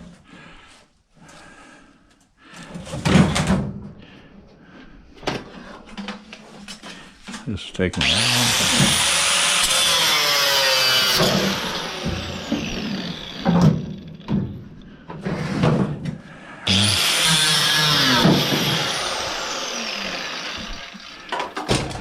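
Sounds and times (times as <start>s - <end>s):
electric drill running: 8.0s - 14.3s, 16.7s - 21.6s.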